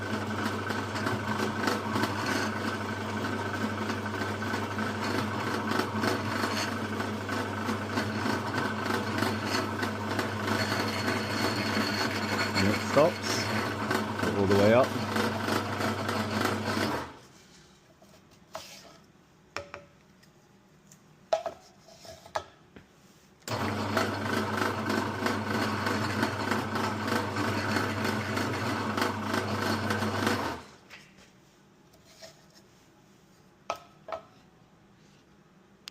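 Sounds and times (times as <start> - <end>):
pillar drill motor humming: 0.0 - 17.2, 23.5 - 30.6.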